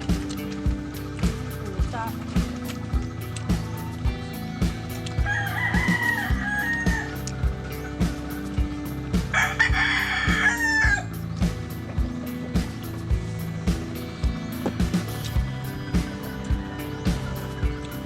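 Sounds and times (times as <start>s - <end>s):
background music with beat: 0.0s - 18.0s
rooster crowing: 5.2s - 7.3s, 9.3s - 11.2s.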